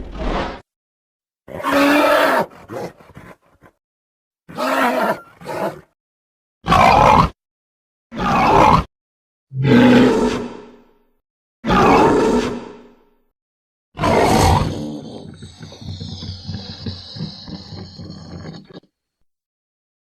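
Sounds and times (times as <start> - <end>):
monster growling roars: 14.0 - 18.8.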